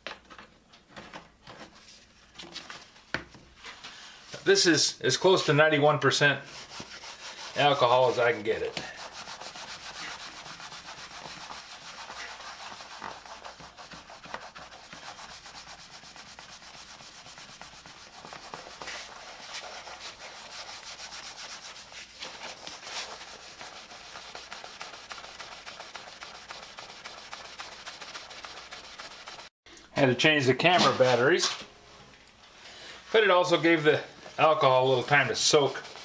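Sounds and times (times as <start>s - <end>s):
wipe scrubbing plastic: 6.4s - 29.5s, 33.4s - 36.0s.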